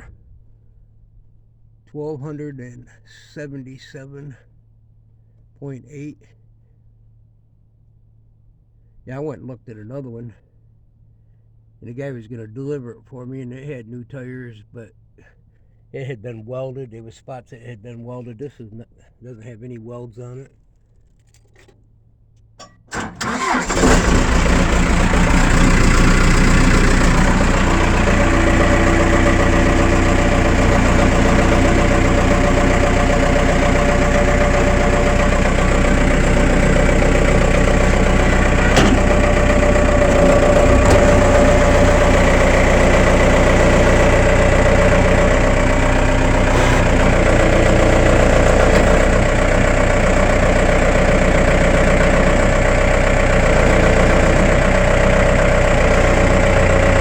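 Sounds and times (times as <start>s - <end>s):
diesel engine cranking and idling: 22.6s - 57.0s.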